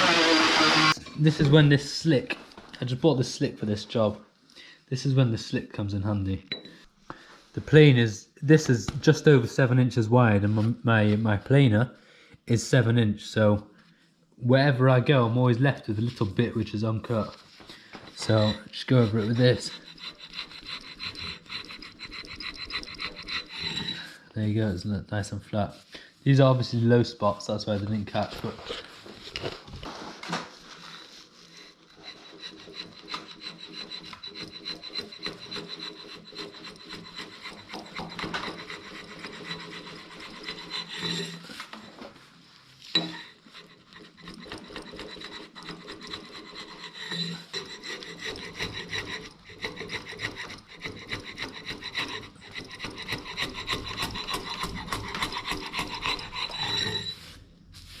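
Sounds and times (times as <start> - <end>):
chisel shaving wood: 0.0 - 1.0, 16.8 - 24.2, 31.0 - 42.0, 42.9 - 57.2.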